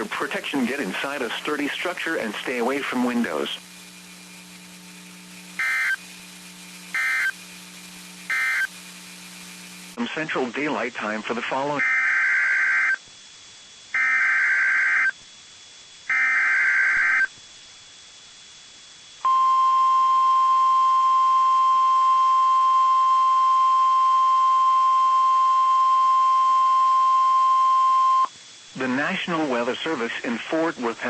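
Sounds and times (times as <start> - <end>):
rasping data bursts: 0.0 - 10.0, 11.5 - 13.0, 13.9 - 15.2, 16.1 - 17.4
steady warning alarm tone: 3.9 - 6.1, 6.8 - 7.4, 8.2 - 8.8, 11.8 - 13.0, 14.0 - 15.2, 16.1 - 17.3.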